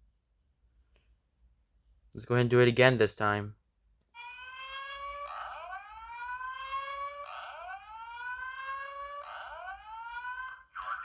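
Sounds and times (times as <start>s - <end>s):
fire alarm whoop tone: 4.2s - 11.0s.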